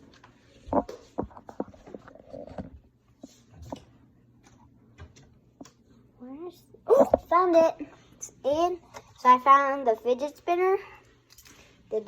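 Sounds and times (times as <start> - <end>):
objects knocking and clattering: 0.6 - 2.9.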